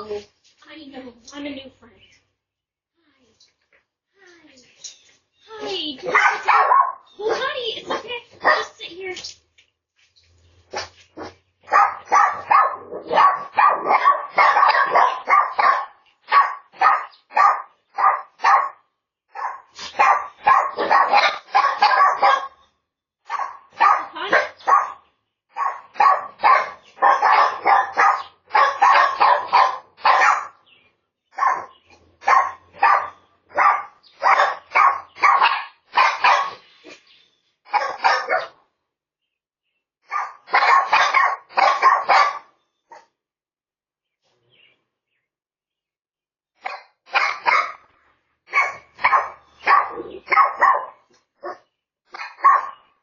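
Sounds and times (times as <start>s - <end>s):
dog barking: 6.0s - 8.8s, 10.7s - 22.6s, 23.2s - 30.6s, 31.3s - 36.6s, 37.7s - 38.6s, 40.0s - 43.1s, 46.6s - 47.9s, 48.5s - 52.8s.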